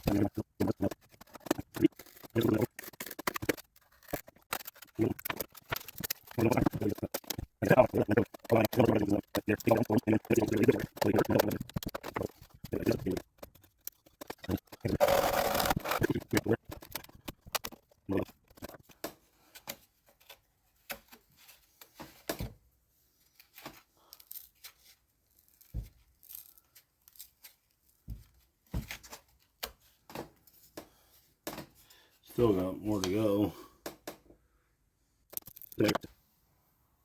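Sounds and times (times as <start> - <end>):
loud tearing rasping: 0.0 - 17.7.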